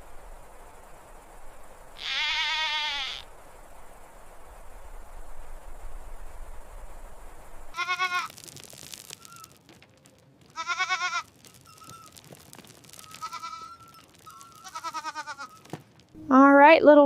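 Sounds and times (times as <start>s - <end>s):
steady hiss with low hum: 0.0s - 17.0s
goats bleating: 2.0s - 3.2s, 7.8s - 8.4s, 10.5s - 12.2s, 12.8s - 15.7s.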